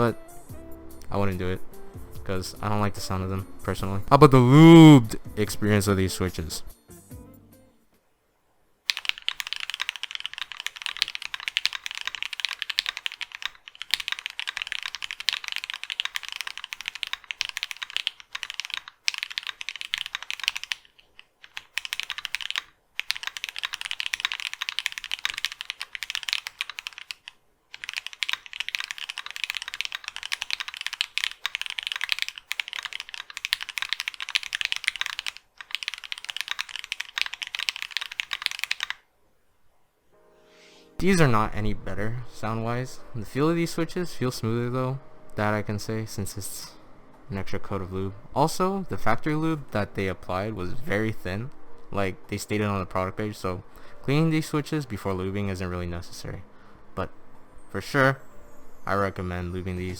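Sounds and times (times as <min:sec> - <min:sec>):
fast typing on mechanical keyboard: 0:08.9 - 0:39.0.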